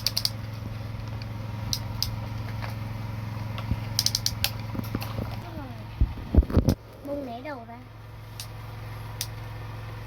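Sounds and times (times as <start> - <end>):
short clicking rattles: 0.0 - 0.4, 3.9 - 5.2
mini excavator motor humming: 0.0 - 10.0.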